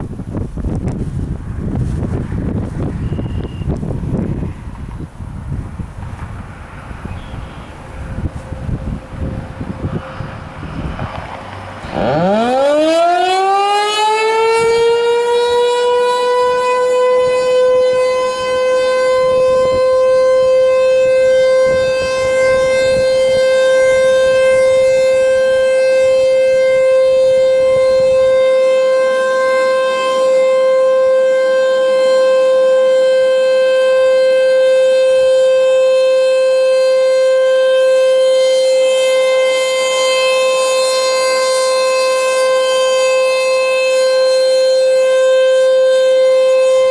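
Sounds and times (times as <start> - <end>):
warning siren winding up: 11.8 - 46.9.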